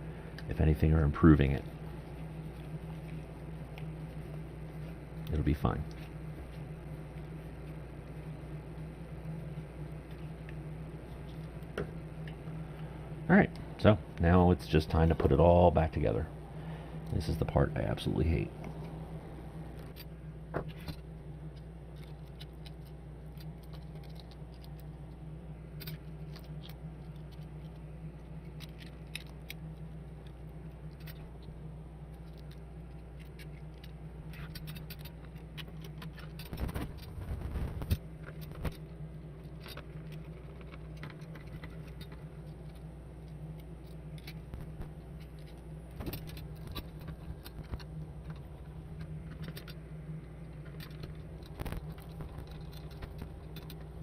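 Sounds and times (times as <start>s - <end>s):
steady low hum: 0.0s - 54.0s
clicks and rattles of handled parts: 19.8s - 25.2s, 25.8s - 49.8s, 50.4s - 54.0s.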